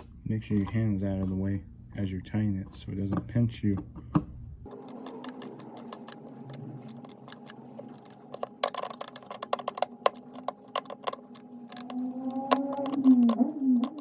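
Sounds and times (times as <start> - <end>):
rapid irregular clicking: 4.7 - 14.0.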